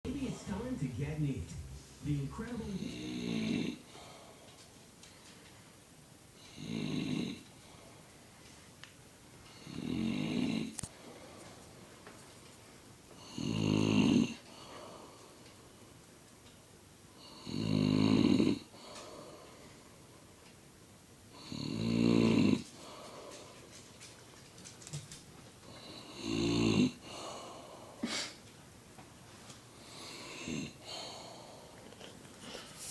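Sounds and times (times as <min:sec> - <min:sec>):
man snoring: 0:02.6 - 0:03.8, 0:06.5 - 0:07.4, 0:09.8 - 0:10.7, 0:13.3 - 0:14.4, 0:17.4 - 0:18.6, 0:21.4 - 0:22.6, 0:26.1 - 0:27.0, 0:30.1 - 0:31.2
faint breathing: 0:22.7 - 0:23.7, 0:29.8 - 0:32.9.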